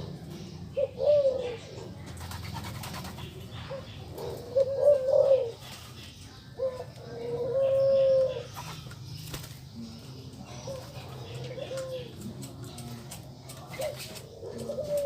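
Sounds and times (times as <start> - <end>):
dove cooing: 0.0 - 15.0.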